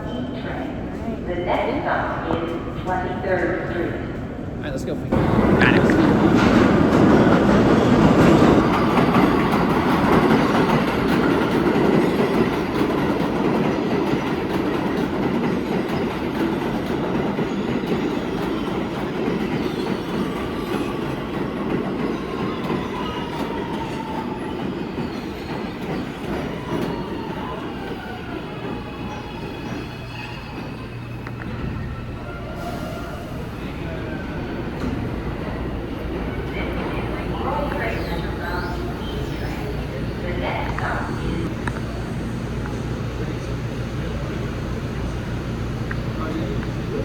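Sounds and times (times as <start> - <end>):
subway train rumbling: 0.0 - 47.0
faint wheel squeal: 22.4 - 35.0.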